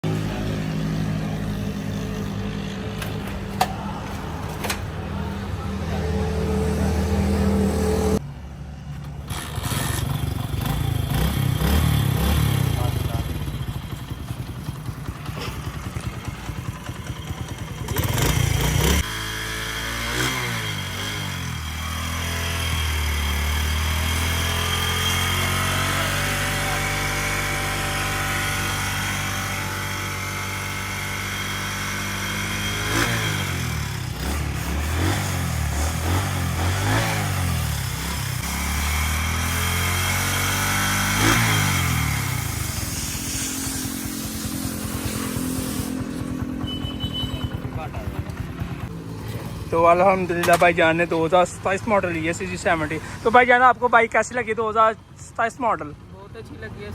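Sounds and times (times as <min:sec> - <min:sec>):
motorcycle engine revving: 0:00.0 - 0:53.6.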